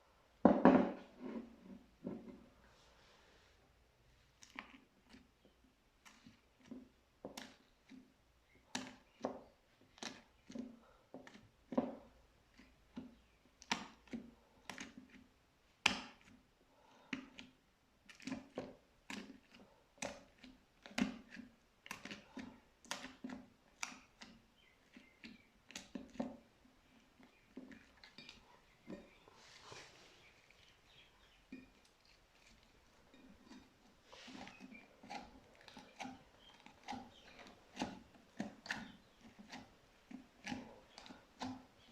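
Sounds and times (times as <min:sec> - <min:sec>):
slime squelching: 0:17.0 - 0:41.9.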